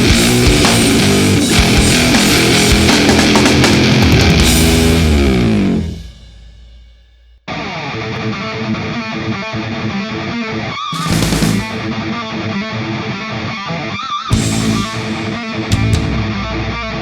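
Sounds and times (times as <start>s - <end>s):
electric guitar playing: 0.0s - 6.2s, 7.5s - 17.0s
rock band playing: 0.0s - 6.9s, 10.9s - 12.3s, 14.3s - 17.0s.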